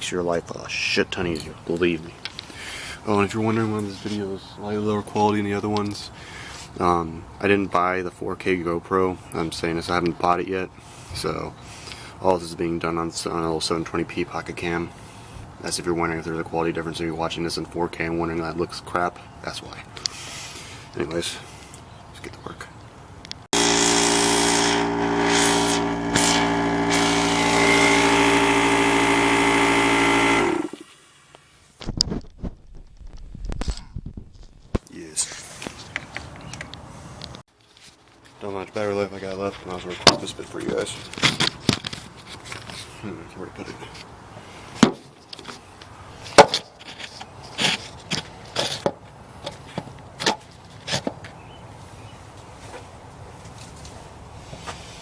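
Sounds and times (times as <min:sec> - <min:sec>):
air compressor running: 0:23.6 - 0:30.9
compressor winding down: 0:23.6 - 0:31.1
air hissing: 0:23.6 - 0:31.2.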